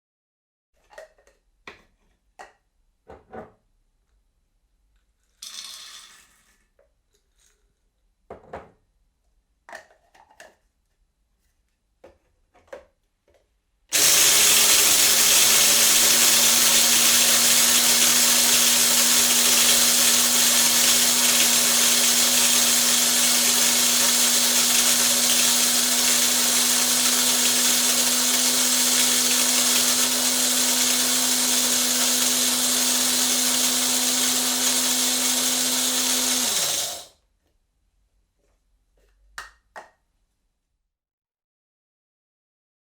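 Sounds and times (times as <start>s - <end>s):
coffee grinder grinding beans: 13.9s - 37.1s.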